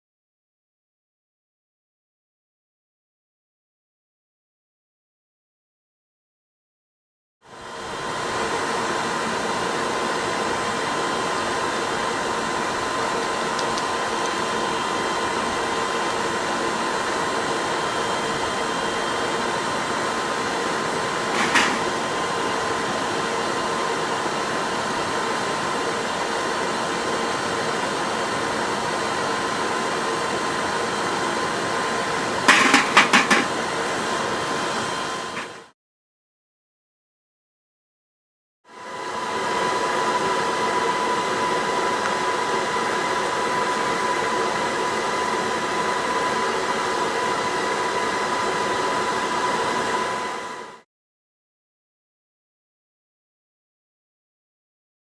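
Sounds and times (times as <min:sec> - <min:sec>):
electric air blower whooshing: 0:07.5 - 0:35.7, 0:38.7 - 0:50.8.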